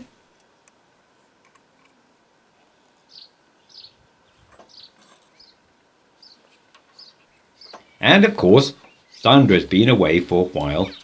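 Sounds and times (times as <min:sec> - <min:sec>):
faint bird chirps: 0:03.0 - 0:05.6, 0:06.2 - 0:09.5, 0:10.7 - 0:11.0.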